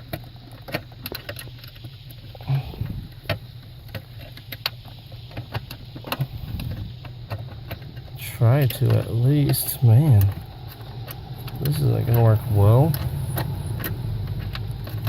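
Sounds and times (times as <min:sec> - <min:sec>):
low grunt of effort: 0:02.4 - 0:03.1.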